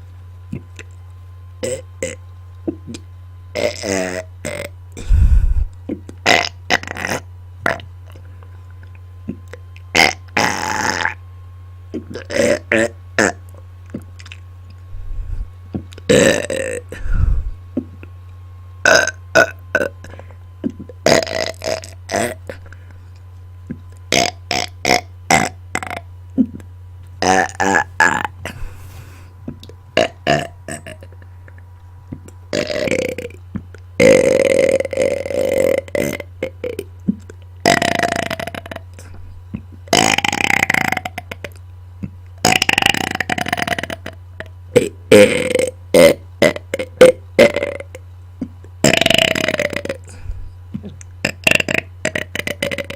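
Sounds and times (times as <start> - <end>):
low hum: 0.0 - 37.7, 49.4 - 52.9
person burping: 1.6 - 3.0, 3.6 - 7.9, 9.2 - 11.2, 12.0 - 13.4, 16.1 - 17.5, 18.8 - 22.7, 24.1 - 26.6, 27.2 - 29.2, 30.0 - 31.2, 32.5 - 33.4, 34.0 - 39.2, 39.9 - 41.6, 42.4 - 48.0, 48.8 - 52.9.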